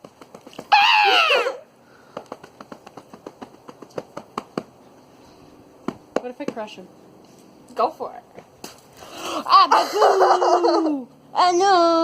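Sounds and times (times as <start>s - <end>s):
loud high-pitched cry: 0.7s - 1.7s, 9.2s - 11.0s.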